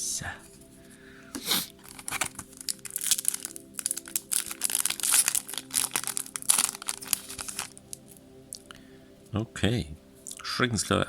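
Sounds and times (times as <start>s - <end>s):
foil wrapper crinkling: 1.7s - 8.7s.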